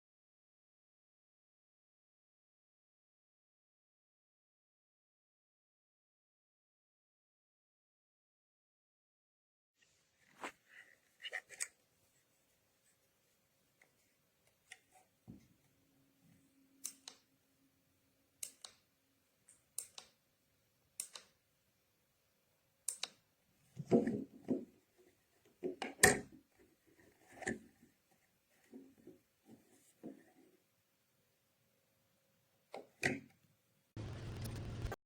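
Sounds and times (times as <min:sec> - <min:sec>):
plastic object clicking: 0:21.0 - 0:21.4, 0:22.9 - 0:23.2.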